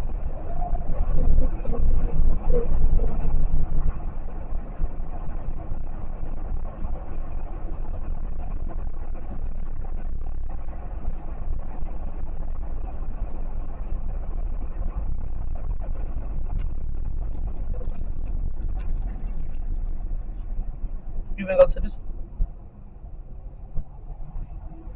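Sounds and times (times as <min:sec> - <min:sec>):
car road and engine rumble: 0:00.0 - 0:24.9
faint clicks: 0:15.6 - 0:20.7.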